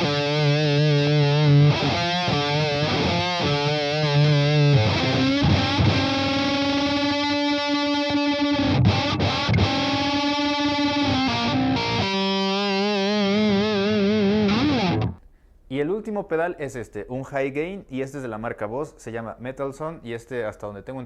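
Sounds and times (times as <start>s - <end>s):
distorted electric guitar lead: 0.0s - 15.2s.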